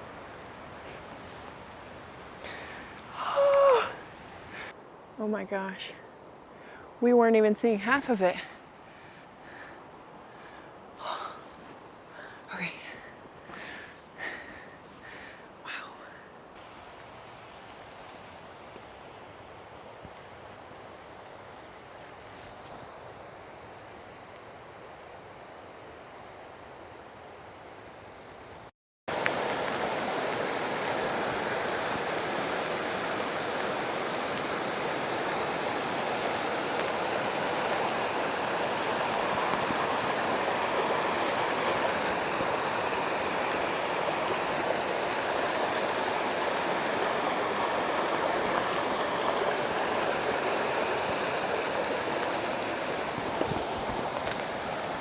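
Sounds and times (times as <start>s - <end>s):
rushing roar of waterfalls: 29.1s - 55.0s.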